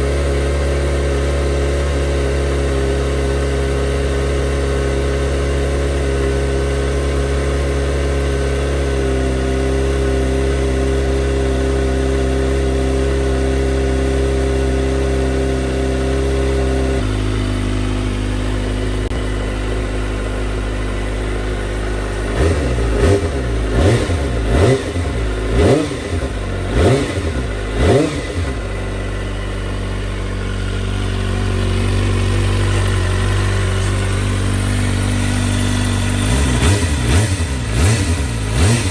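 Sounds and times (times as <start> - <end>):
motorcycle engine idling: 0.0 - 38.9
motorcycle throttle blips: 13.5 - 38.9.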